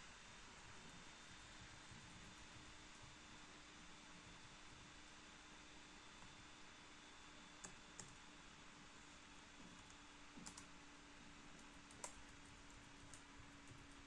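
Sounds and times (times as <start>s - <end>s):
faint steady hum: 0.0s - 14.0s
laptop keystrokes: 9.8s - 10.7s, 11.6s - 14.0s.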